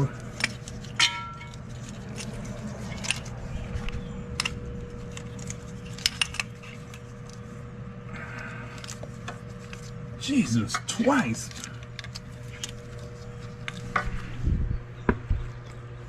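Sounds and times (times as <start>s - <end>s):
small metal parts clicking: 0.0s - 3.4s, 4.3s - 7.4s
steady low hum: 0.0s - 16.0s.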